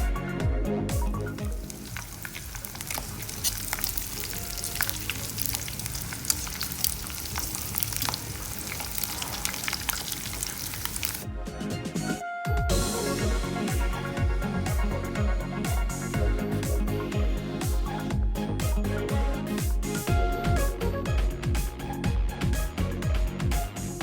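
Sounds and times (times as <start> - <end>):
oil crackling and popping: 1.0 - 11.2
meat sizzling in oil: 1.2 - 11.2.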